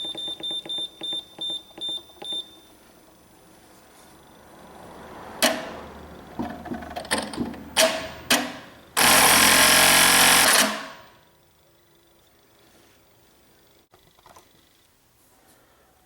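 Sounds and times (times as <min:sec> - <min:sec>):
machine clicks and knocks: 0:05.4 - 0:09.1
sewing machine stitching: 0:07.0 - 0:11.0.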